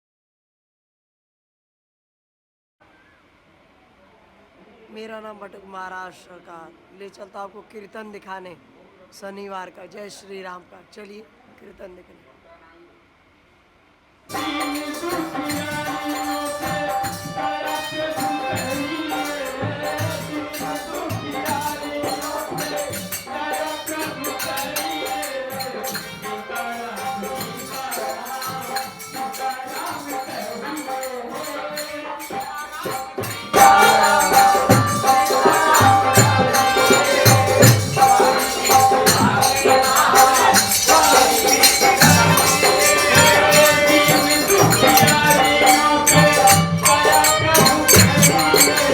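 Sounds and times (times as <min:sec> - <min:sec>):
group chanting: 0:14.3 - 0:48.9
jingling hand percussion: 0:14.3 - 0:48.9.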